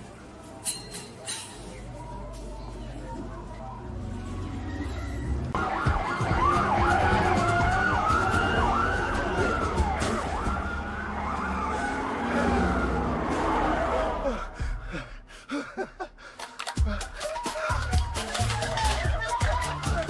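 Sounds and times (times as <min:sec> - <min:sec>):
siren-like wailing: 0:04.7 - 0:14.6.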